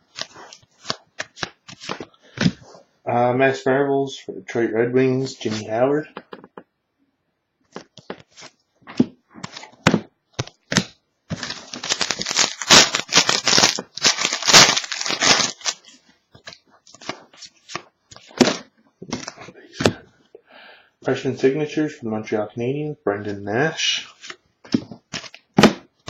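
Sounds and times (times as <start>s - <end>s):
wrapper tearing and crinkling: 10.7s - 17.3s.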